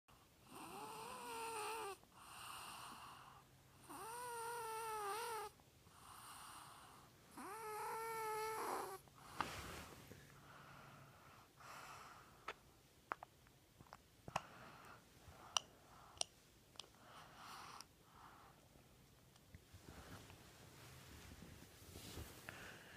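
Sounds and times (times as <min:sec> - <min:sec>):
breathing: 0:05.9 - 0:07.1, 0:09.2 - 0:12.6, 0:14.3 - 0:16.3, 0:16.9 - 0:18.7, 0:22.3 - 0:22.9.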